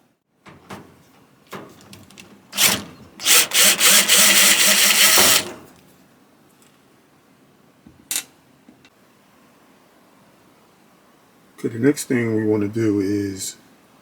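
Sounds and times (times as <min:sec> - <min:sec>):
cordless drill whirring: 0:02.6 - 0:05.6.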